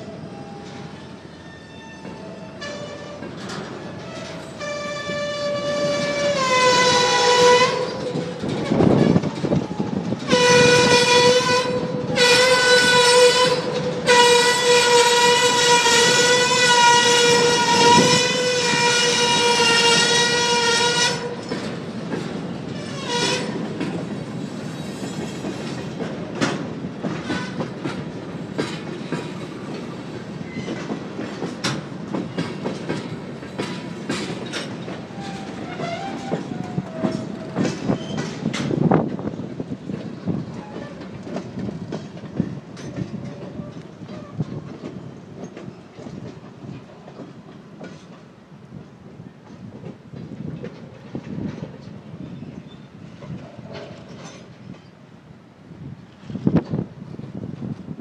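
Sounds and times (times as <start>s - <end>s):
train rumble: 0.0s - 58.0s
train wheels clicking on rail joints: 0.0s - 58.0s
locomotive air horn blasts: 4.6s - 9.2s, 10.3s - 21.4s, 22.9s - 23.6s, 35.7s - 36.4s.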